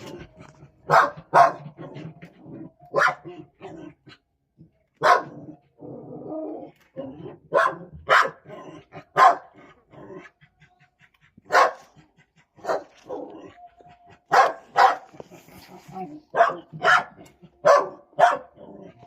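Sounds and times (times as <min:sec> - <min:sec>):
dog barking: 0:00.8 - 0:02.1, 0:02.9 - 0:03.8, 0:05.0 - 0:05.6, 0:07.5 - 0:09.6, 0:11.5 - 0:12.0, 0:12.6 - 0:13.5, 0:14.3 - 0:15.2, 0:16.2 - 0:18.8.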